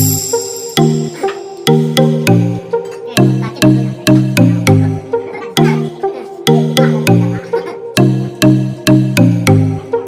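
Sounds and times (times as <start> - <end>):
electronic music with punchy beat: 0.0 - 10.0.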